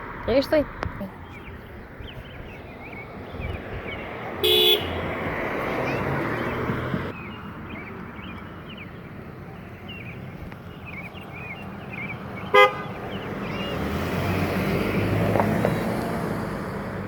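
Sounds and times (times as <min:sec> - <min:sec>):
vehicle passing: 0:00.0 - 0:17.0
birds chirping: 0:00.2 - 0:16.3
car horn toot: 0:04.4 - 0:05.1, 0:12.5 - 0:13.0.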